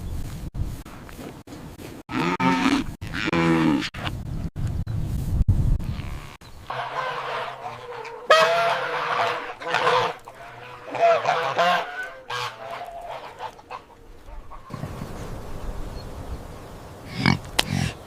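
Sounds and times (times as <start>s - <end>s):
poultry honking and squawking: 2.1s - 4.1s, 5.9s - 14.8s.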